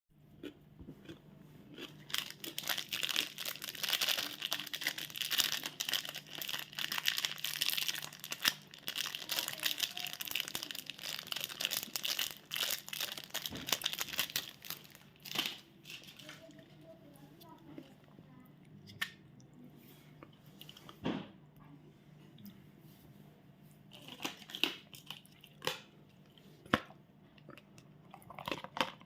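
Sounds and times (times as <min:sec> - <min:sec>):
candy wrapper crinkling: 0:01.8 - 0:16.7, 0:23.9 - 0:25.8.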